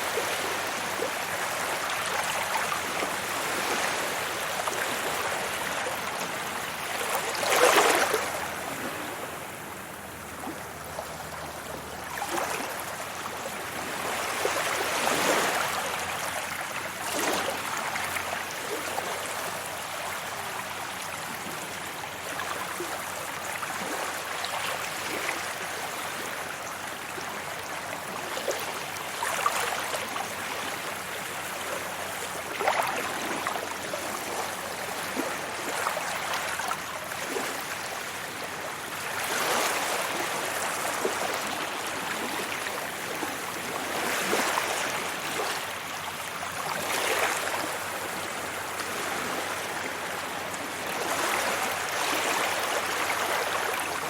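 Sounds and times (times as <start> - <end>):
sea waves breaking on beach: 0.0 - 54.0.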